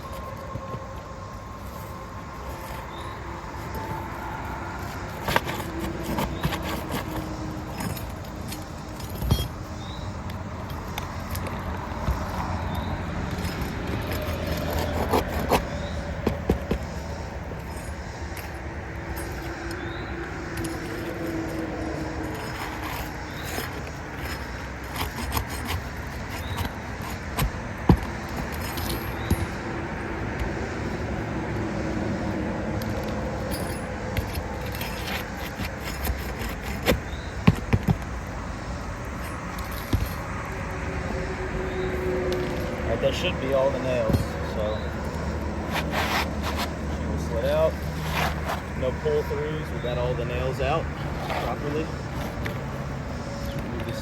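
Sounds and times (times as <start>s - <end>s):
metal tool clinking on nails: 4.8s - 11.6s, 17.6s - 27.2s, 32.8s - 36.9s, 39.1s - 40.3s.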